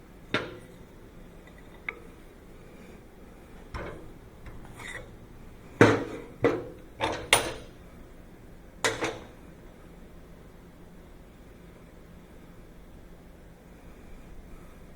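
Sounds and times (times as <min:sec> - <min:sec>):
steel parts clanking on metal: 0:05.8 - 0:07.8.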